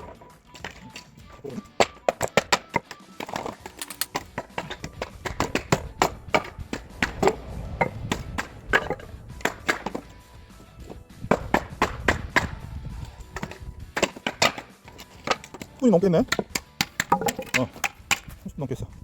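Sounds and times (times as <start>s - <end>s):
music: 0.0s - 19.0s
wooden boards knocking and cracking: 16.3s - 18.3s.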